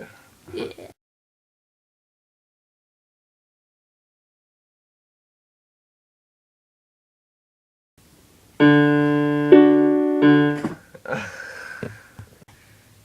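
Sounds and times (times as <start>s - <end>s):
keyboard piano chords: 8.6s - 10.8s.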